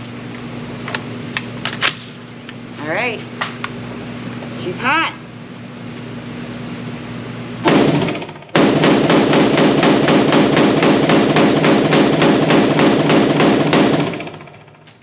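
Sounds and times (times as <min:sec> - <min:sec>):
rifle shots: 0:07.7 - 0:14.4.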